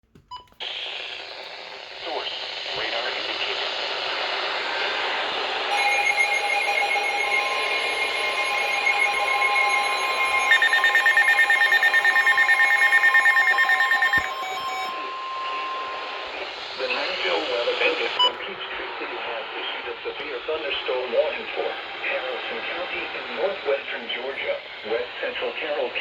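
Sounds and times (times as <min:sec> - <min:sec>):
steady warning alarm tone: 0:04.9 - 0:18.4
electronic alert tones: 0:05.7 - 0:16.6
fast pulsing beep: 0:05.7 - 0:18.4.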